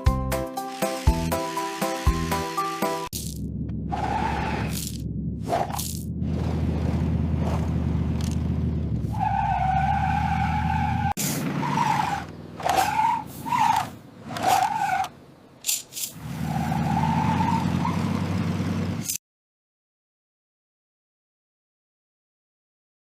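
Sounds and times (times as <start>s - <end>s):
low rumble: 3.2s - 9.1s.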